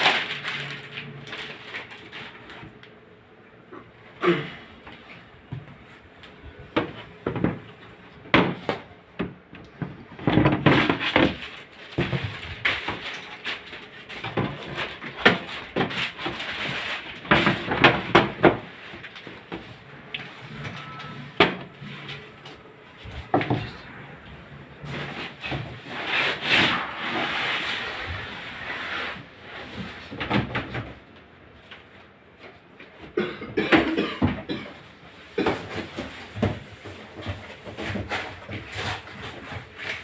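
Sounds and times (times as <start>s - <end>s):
objects knocking and scraping: 6.6s - 27.4s.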